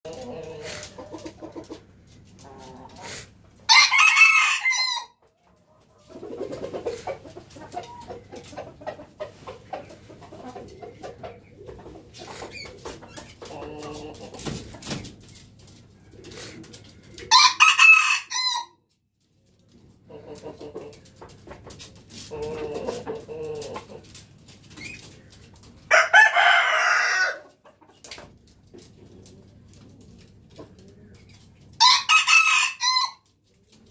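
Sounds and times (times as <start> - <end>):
rooster crowing: 3.7 - 5.2, 17.3 - 18.7, 25.9 - 27.4, 31.8 - 33.2.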